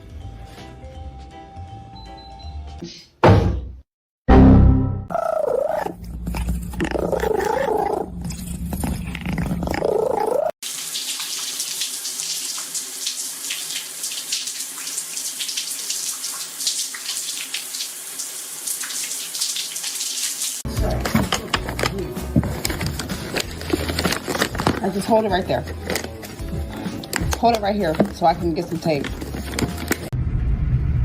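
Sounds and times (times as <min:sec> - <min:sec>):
running water: 0:10.0 - 0:20.7, 0:22.4 - 0:30.1.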